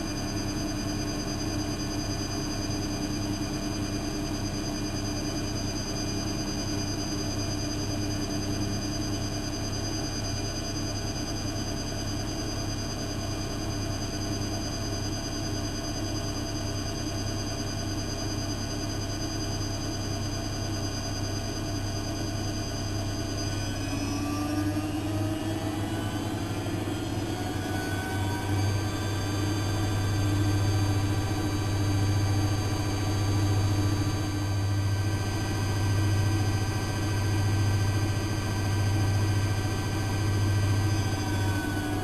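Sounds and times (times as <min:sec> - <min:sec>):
washing machine motor whining: 0:23.5 - 0:42.0.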